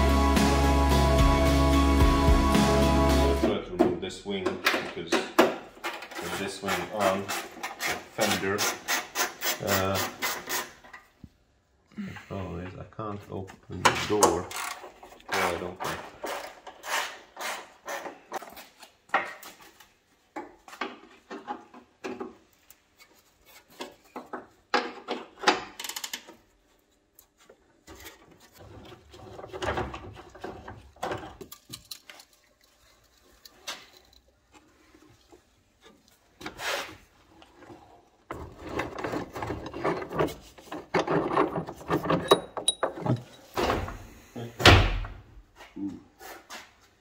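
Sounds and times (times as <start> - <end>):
hand tools clicking and knocking: 3.8 - 11.1, 20.3 - 26.4, 38.3 - 43.5.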